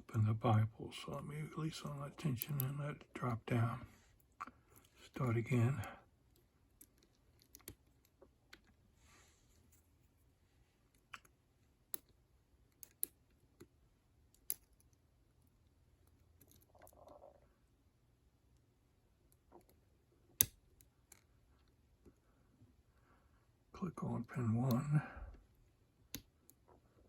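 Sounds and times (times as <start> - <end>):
faint metallic lock pick clicks: 6.3 - 8.8, 10.9 - 13.7, 14.3 - 17.0.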